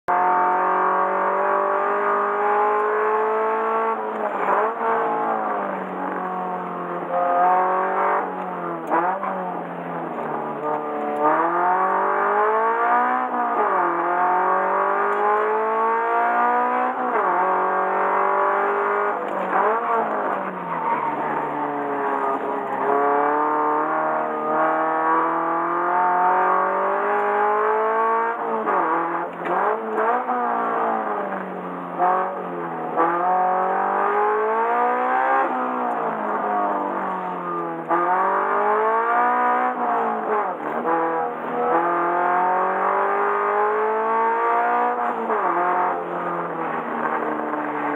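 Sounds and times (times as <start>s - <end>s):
car engine revving: 0.1s - 47.9s.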